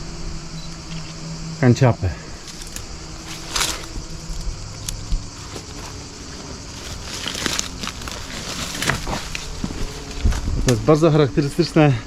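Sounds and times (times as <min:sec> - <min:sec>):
footsteps on stony ground: 0:02.4 - 0:10.9.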